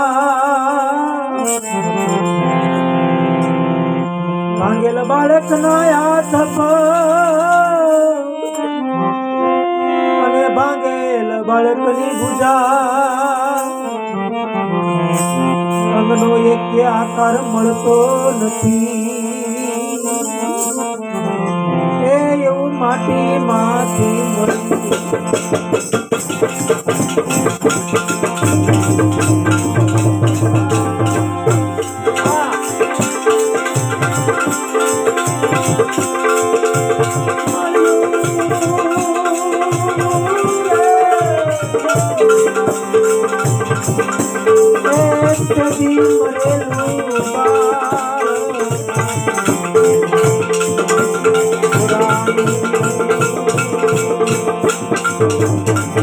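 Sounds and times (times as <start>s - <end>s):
rattling hand percussion: 1.0s - 3.7s, 4.5s - 8.7s, 15.1s - 16.4s, 17.2s - 21.6s, 23.8s - 56.0s
held notes: 13.6s - 56.0s
wavering melody line: 24.0s - 56.0s.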